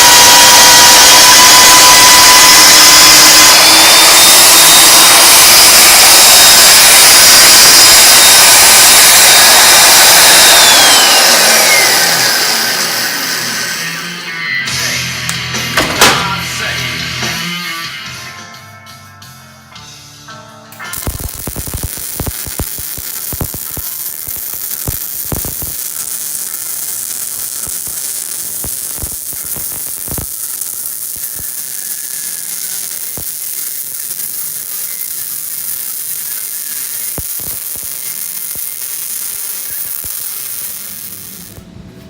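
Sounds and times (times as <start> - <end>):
welding arc crackling: 0.0 - 14.3, 20.8 - 41.7
welding spatter pops: 15.3 - 16.3, 20.8 - 41.7.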